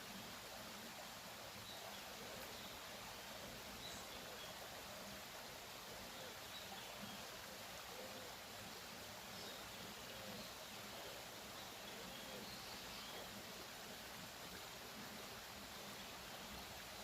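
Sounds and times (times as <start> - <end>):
steady hiss: 0.0 - 17.0
faint bird chirps: 3.7 - 4.7, 9.2 - 13.5.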